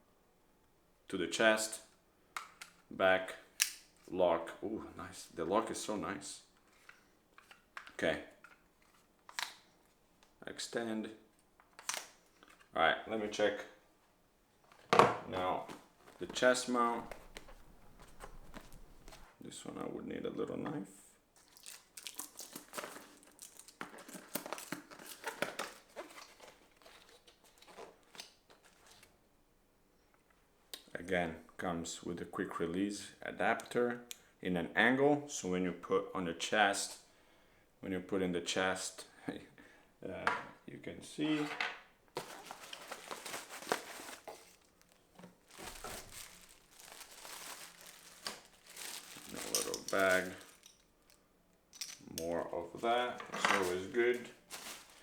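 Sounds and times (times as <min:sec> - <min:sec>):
packaging crinkling and tearing: 0:16.1 - 0:19.3, 0:21.4 - 0:29.1, 0:42.2 - 0:51.2, 0:53.6 - 0:55.0.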